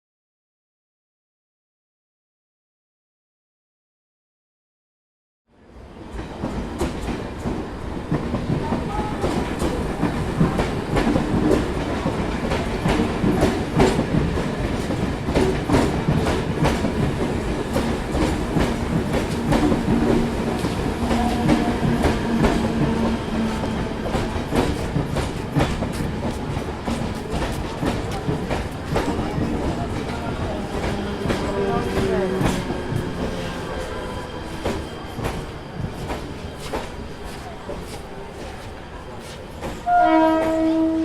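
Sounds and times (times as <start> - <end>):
train rumble: 5.6 - 41.0
train wheels clattering: 6.1 - 40.9.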